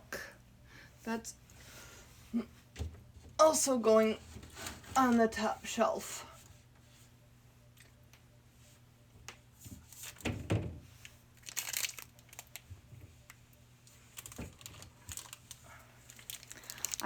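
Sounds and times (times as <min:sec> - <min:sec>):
thud on a shelf: 0:10.2 - 0:10.8
plastic packaging crinkling: 0:11.4 - 0:12.7, 0:13.8 - 0:17.0.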